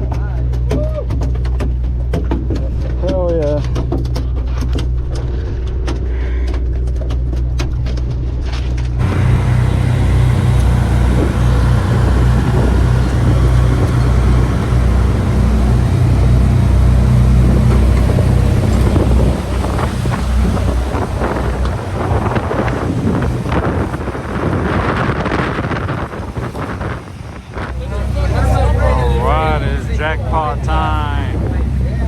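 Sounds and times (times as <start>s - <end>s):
boat engine droning: 4.0s - 32.0s
water noise: 6.9s - 32.0s
wind buffeting microphone: 7.5s - 32.0s.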